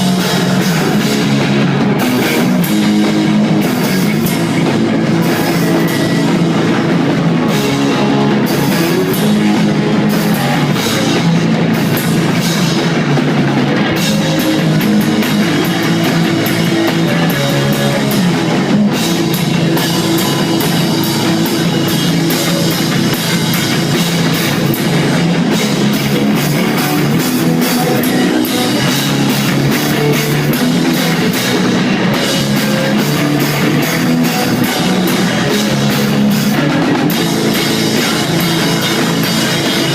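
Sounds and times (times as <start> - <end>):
bass guitar: 0.0 - 39.9
distorted electric guitar: 0.0 - 39.9
drum kit playing: 0.0 - 39.9.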